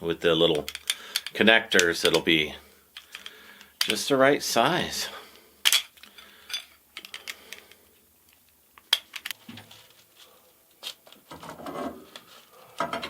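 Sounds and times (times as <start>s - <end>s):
metal connectors clicking and tapping: 0.5s - 4.1s, 5.6s - 9.6s.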